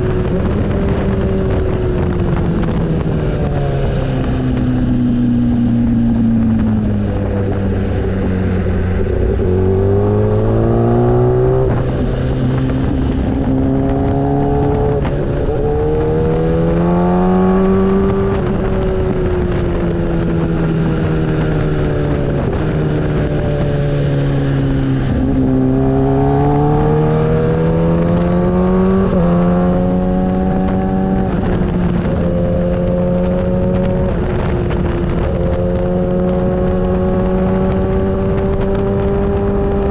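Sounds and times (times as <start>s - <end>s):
motorcycle engine revving: 0.0s - 39.9s
wind rushing: 0.0s - 39.9s.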